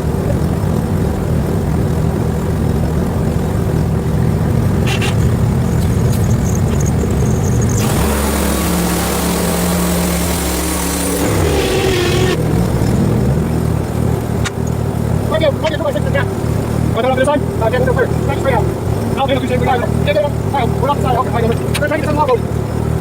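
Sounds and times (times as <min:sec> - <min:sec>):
small gasoline engine running: 0:00.0 - 0:23.0
loud hiss: 0:07.8 - 0:12.5.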